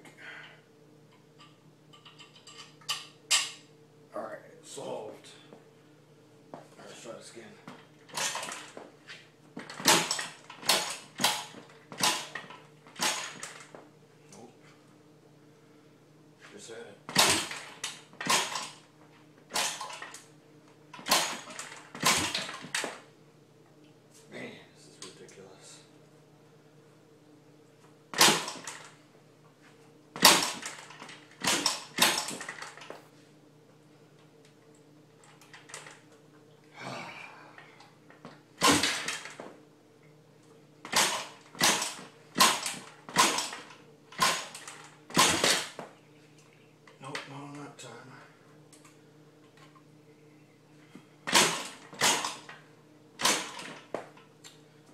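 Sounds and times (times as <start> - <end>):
motorbike engine being kick-started: 8.1 - 8.8, 9.7 - 13.6, 17.1 - 18.8, 19.5 - 20.2, 21.0 - 23.0, 28.2 - 28.9, 30.2 - 32.9, 38.6 - 39.4, 40.9 - 45.8, 51.3 - 52.5, 53.2 - 53.9.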